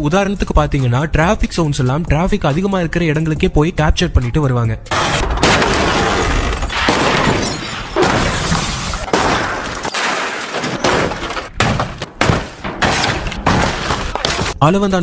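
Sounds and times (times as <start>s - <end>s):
crashing and shattering: 4.9s - 14.6s.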